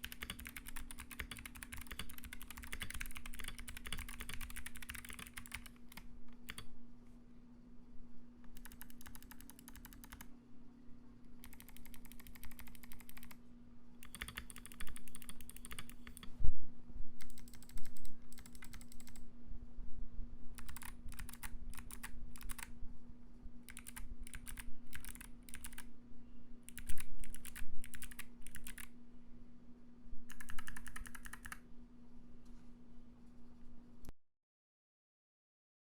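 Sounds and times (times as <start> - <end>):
mechanical keyboard typing clicks: 0.0 - 6.7, 8.5 - 10.3, 11.4 - 13.4, 14.0 - 16.3, 17.2 - 19.2, 20.6 - 22.7, 23.7 - 25.9, 26.7 - 28.9, 30.3 - 31.6.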